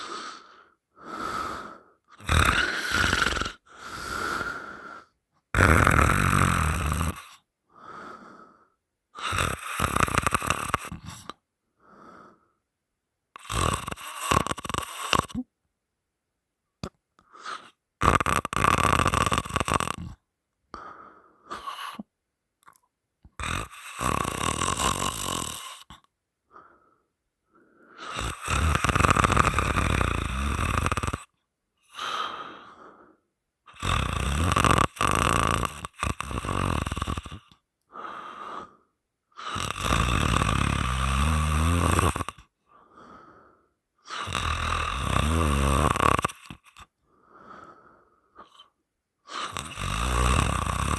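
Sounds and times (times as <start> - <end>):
faint breaths: 0.0 - 5.2, 7.7 - 9.3, 20.7 - 22.1, 31.8 - 33.3, 36.4 - 39.7, 42.6 - 44.4, 46.4 - 50.6
woman snoring loudly: 0.0 - 8.3, 9.2 - 12.4, 13.4 - 15.5, 17.3 - 20.2, 23.3 - 26.1, 27.9 - 43.0, 44.0 - 47.6, 49.3 - 50.9.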